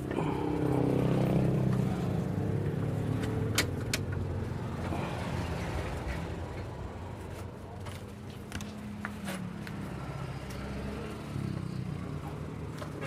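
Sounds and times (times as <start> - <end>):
motorcycle engine running: 0.0 - 8.1.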